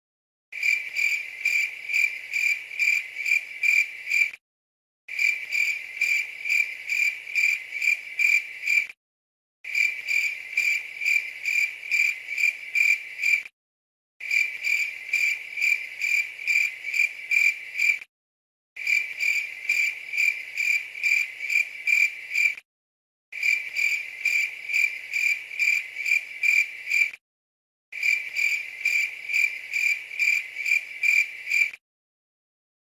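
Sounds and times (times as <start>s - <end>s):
crickets chirping: 0.6s - 4.3s, 5.1s - 8.9s, 9.7s - 13.4s, 14.2s - 18.0s, 18.8s - 22.6s, 23.4s - 27.1s, 28.0s - 31.8s.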